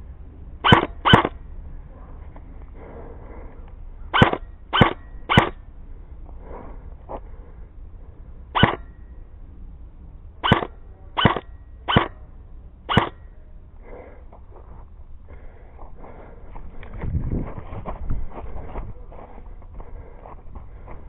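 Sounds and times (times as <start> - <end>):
airsoft gun shots: 0.6 - 1.4, 4.1 - 5.6, 8.6 - 8.9, 10.4 - 12.2, 12.9 - 13.2.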